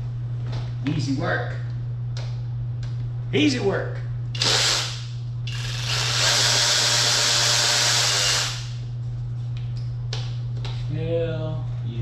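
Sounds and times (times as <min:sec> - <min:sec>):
steady low hum: 0:00.0 - 0:12.0
cordless power tool running: 0:04.4 - 0:08.8.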